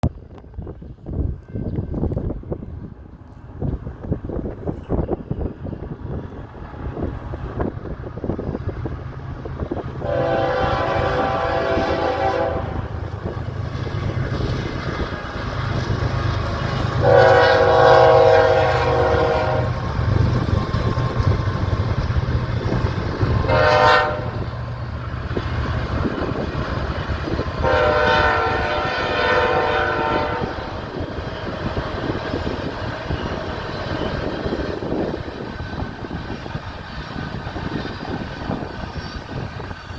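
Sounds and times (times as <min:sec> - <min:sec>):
low rumble of train: 0:00.0 - 0:39.9
locomotive air horn blasts: 0:10.0 - 0:13.0, 0:16.8 - 0:19.8, 0:23.4 - 0:24.4, 0:27.6 - 0:30.8.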